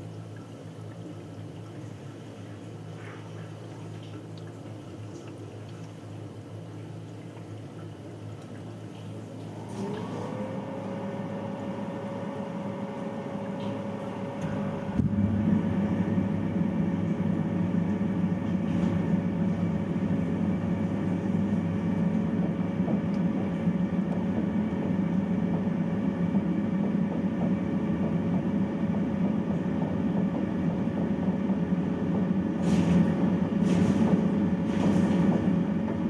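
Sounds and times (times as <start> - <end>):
water heater rumbling: 0.0 - 36.0.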